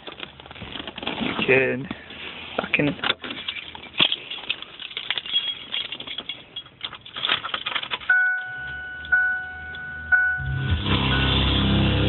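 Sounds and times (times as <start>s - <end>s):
car keys rattling and clicking: 2.9s - 10.4s
car warning chime dinging: 8.1s - 11.6s
low hum: 8.2s - 12.0s.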